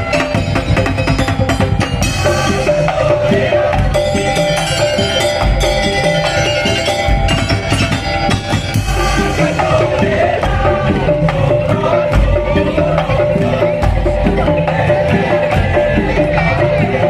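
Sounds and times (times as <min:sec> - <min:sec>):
deep bass drum beats: 0:00.0 - 0:17.0
wavering held melody: 0:00.0 - 0:17.0.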